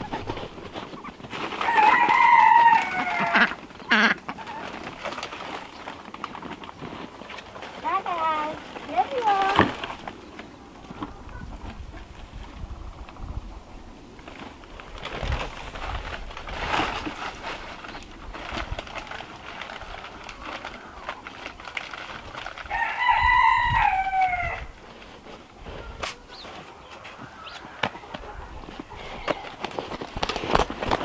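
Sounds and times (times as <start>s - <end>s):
crunching and knocking noises: 0.0s - 13.5s, 14.2s - 31.0s
rooster crowing: 1.6s - 4.1s, 22.6s - 24.9s.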